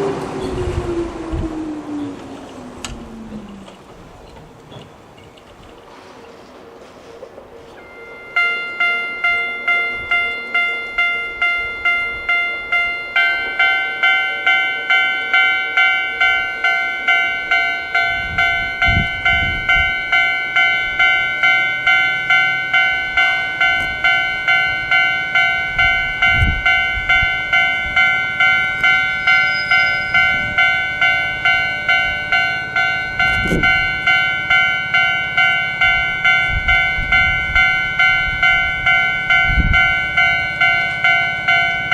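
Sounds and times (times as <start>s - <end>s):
wind buffeting microphone: 0.0s - 7.7s, 17.4s - 41.9s
level crossing alarm ringing: 7.7s - 41.9s.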